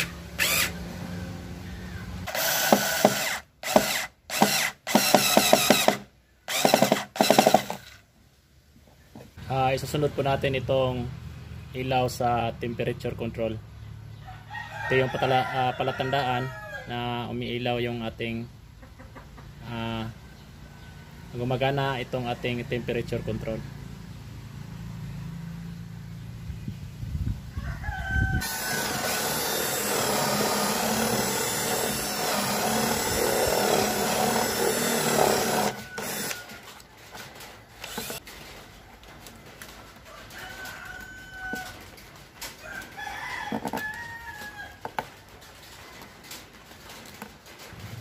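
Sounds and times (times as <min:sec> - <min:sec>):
rooster crowing: 0:00.6 - 0:02.3, 0:14.2 - 0:17.0, 0:27.5 - 0:29.4, 0:35.1 - 0:36.8, 0:40.0 - 0:41.9, 0:42.6 - 0:44.9.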